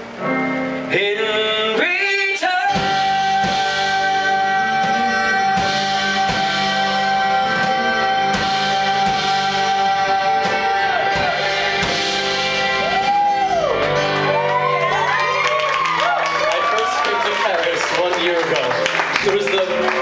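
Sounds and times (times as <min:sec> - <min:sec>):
guitar accompaniment: 0:00.0 - 0:20.0
man singing: 0:00.8 - 0:13.6.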